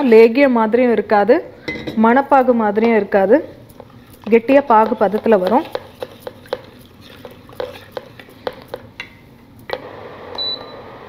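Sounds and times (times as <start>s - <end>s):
spoon stirring in a pot: 1.6s - 9.4s.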